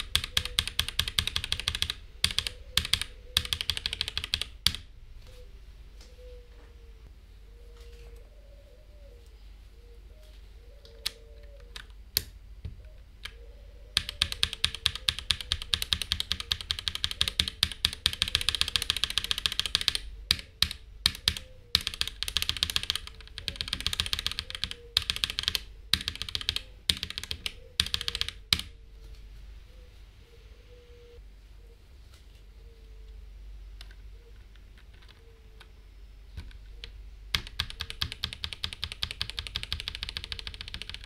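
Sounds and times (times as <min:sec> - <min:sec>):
mechanical keyboard typing: 0:00.0 - 0:04.9, 0:13.2 - 0:28.7, 0:36.4 - 0:41.0.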